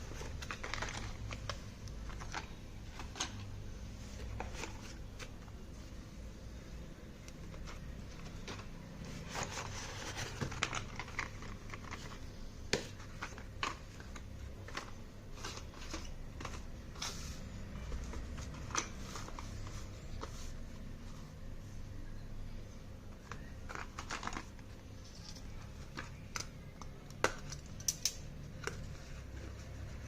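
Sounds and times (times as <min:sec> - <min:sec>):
plastic packaging crinkling and tearing: 0:00.0 - 0:03.5, 0:07.3 - 0:12.4, 0:23.2 - 0:27.0.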